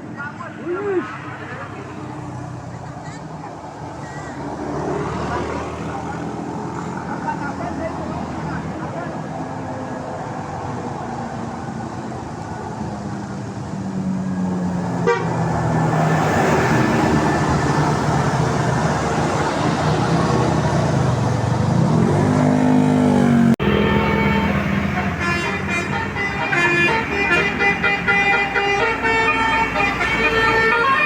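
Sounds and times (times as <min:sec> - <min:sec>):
bus engine: 0:00.0 - 0:31.0
musical bus horn: 0:15.0 - 0:15.5, 0:23.6 - 0:31.0.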